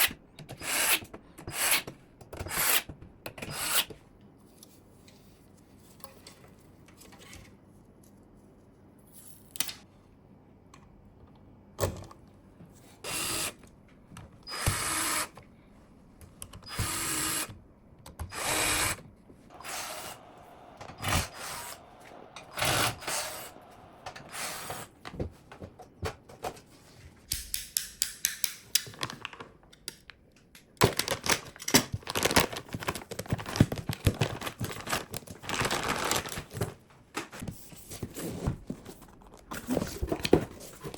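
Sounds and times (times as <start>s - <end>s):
computer parts scraping: 19.5s - 25.0s.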